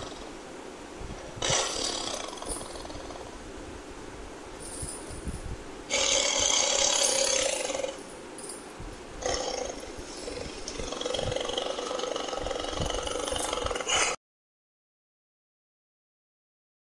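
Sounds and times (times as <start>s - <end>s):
tiger roaring: 1.4s - 3.4s, 5.9s - 8.0s, 9.2s - 14.2s.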